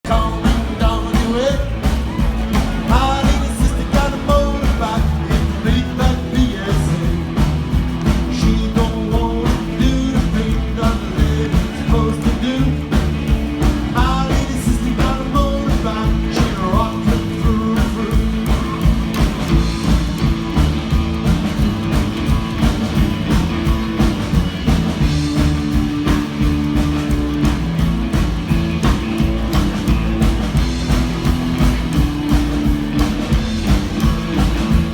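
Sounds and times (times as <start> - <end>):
person singing: 0.0 - 7.4, 8.1 - 19.2
rock and roll band playing: 0.0 - 34.9.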